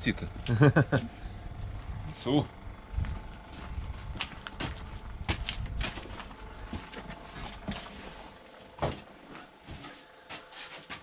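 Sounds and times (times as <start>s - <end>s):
footsteps: 2.9s - 11.0s.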